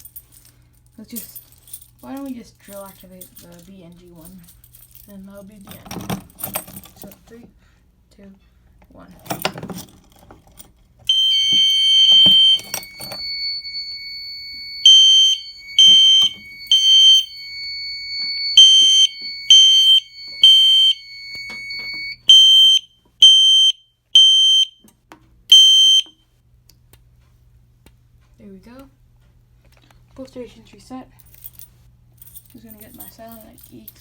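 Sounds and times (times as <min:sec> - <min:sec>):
fire alarm horn: 0:11.1 - 0:24.8, 0:25.5 - 0:26.2
steady alarm tone: 0:11.1 - 0:24.8
fire alarm beeps: 0:11.1 - 0:24.9, 0:25.5 - 0:26.2.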